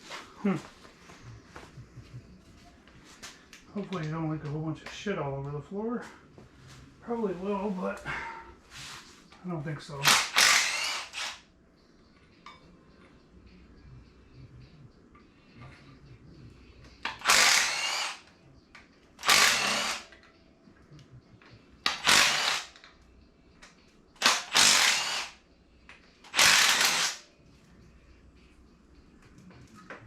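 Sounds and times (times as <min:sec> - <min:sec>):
power drill bursts: 0:10.0 - 0:11.4, 0:17.1 - 0:18.2, 0:19.2 - 0:20.2, 0:21.9 - 0:22.8, 0:24.2 - 0:25.4, 0:26.3 - 0:27.2.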